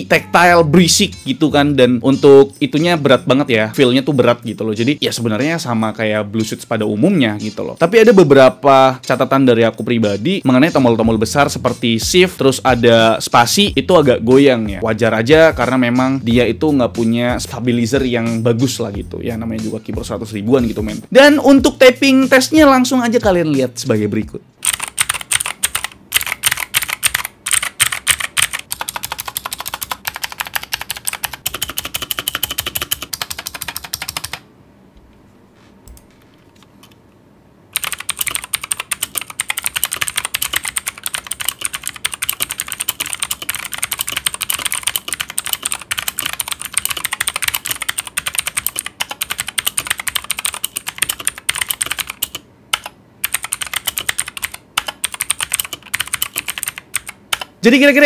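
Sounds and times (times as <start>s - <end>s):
clicky keyboard typing: 24.6s - 34.4s, 37.8s - 57.5s.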